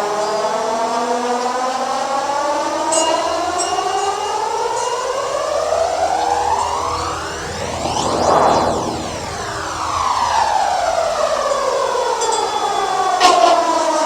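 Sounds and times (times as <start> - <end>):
rising whining tone: 6.3 - 10.2.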